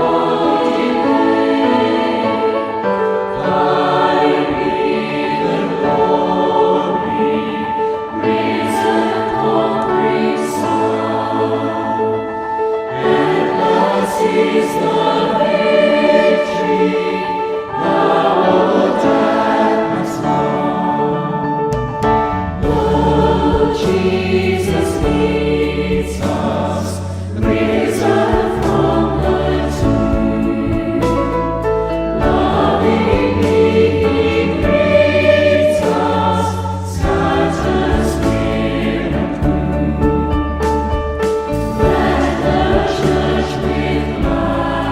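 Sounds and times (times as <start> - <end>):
choir singing a hymn: 0.0 - 44.9.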